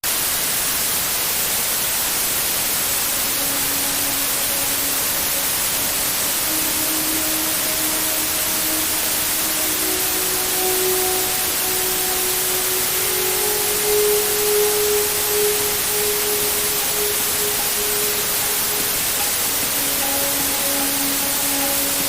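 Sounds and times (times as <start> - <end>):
white noise hiss: 0.0 - 22.0
soft slow melody: 2.5 - 22.0.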